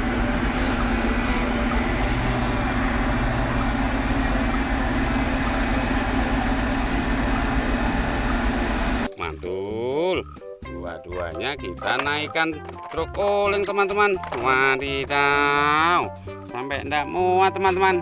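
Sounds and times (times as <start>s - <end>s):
mechanical rumble with low hum: 0.0s - 9.1s.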